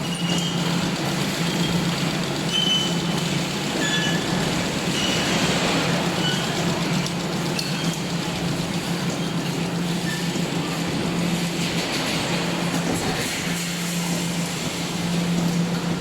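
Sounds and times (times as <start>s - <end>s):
high mechanical squeaks: 0.0s - 0.7s, 2.5s - 5.4s, 6.0s - 6.7s
welding machine humming: 0.0s - 16.0s.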